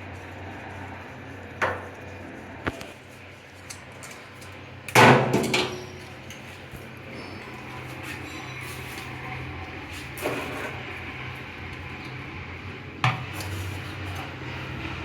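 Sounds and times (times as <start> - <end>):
steady low hum: 0.0 - 8.0.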